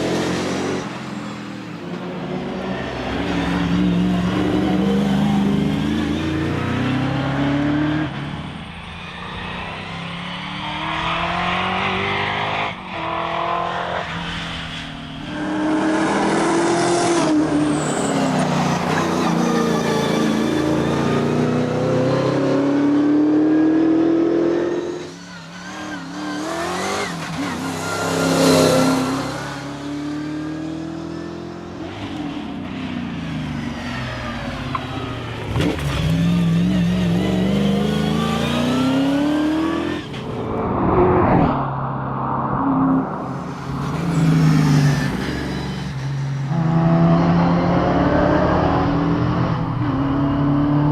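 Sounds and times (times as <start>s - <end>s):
car engine revving hard: 35.5s - 40.0s.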